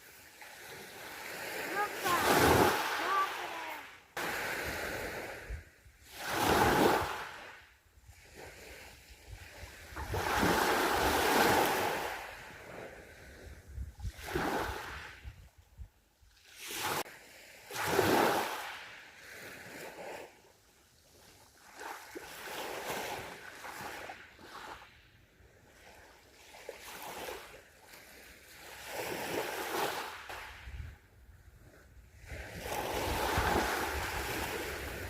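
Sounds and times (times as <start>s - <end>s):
sea waves washing onto beach: 0.0s - 13.4s.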